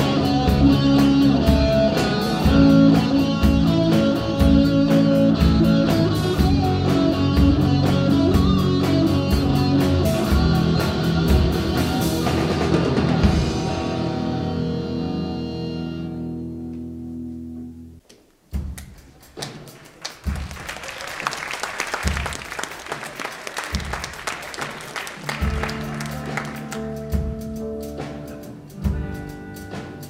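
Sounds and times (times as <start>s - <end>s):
bass drum beat: 0.0s - 13.4s, 21.9s - 22.8s, 23.6s - 29.6s
live band chords: 0.0s - 17.7s, 18.5s - 30.0s
audience applause: 19.4s - 27.0s.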